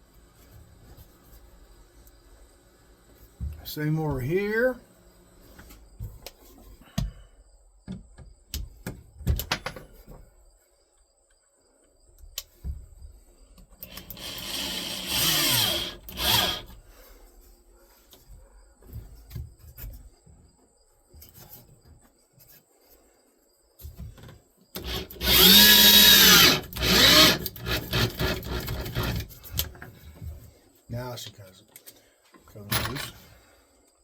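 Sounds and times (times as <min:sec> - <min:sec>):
electric drill running: 0:13.8 - 0:16.7, 0:24.8 - 0:29.3.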